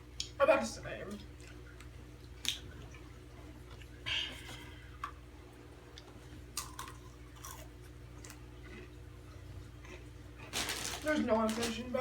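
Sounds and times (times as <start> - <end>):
crisp chips crunching: 6.6 - 8.9, 9.8 - 12.0.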